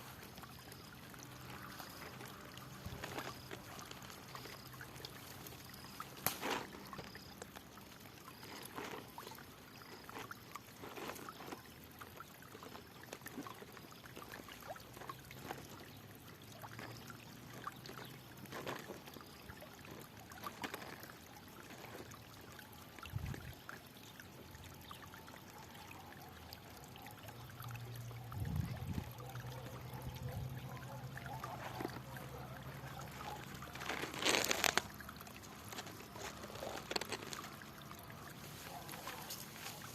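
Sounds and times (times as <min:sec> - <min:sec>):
water flowing and trickling: 0:00.0 - 0:39.9
water splashes: 0:00.0 - 0:39.9.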